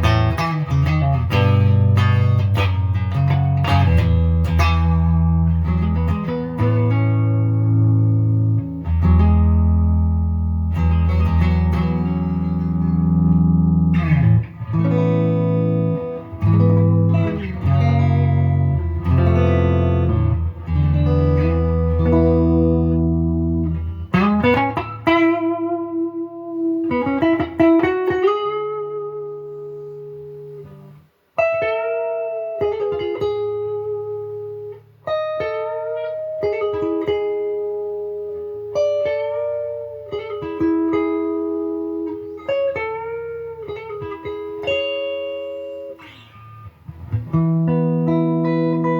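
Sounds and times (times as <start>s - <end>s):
clean electric guitar playing: 0.0s - 48.9s.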